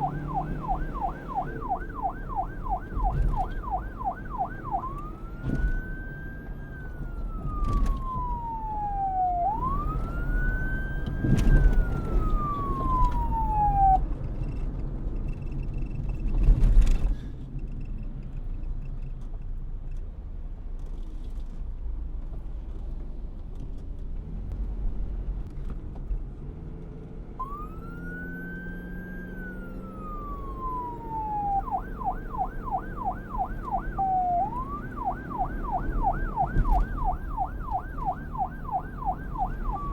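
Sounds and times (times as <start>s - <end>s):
police siren wailing and yelping: 0.0s - 14.1s, 27.4s - 39.9s.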